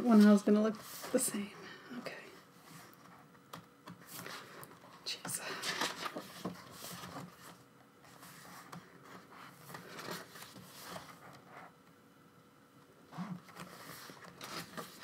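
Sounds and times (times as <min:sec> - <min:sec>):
photobook pages turning: 0:05.6 - 0:11.4, 0:13.2 - 0:15.0.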